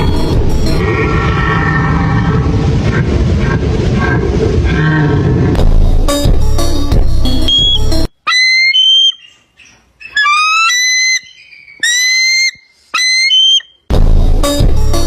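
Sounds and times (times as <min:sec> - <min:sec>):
music: 0:00.0 - 0:00.8, 0:05.6 - 0:08.1, 0:13.9 - 0:15.0
whistled calls: 0:07.4 - 0:13.8.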